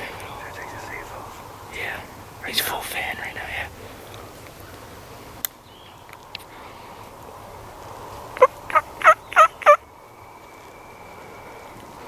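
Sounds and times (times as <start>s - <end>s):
turkey gobbling: 8.4s - 9.8s.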